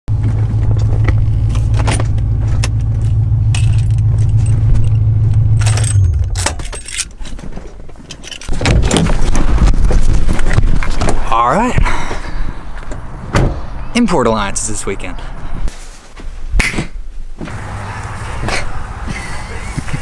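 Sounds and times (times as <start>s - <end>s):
car engine humming: 0.1s - 7.0s, 17.4s - 20.0s.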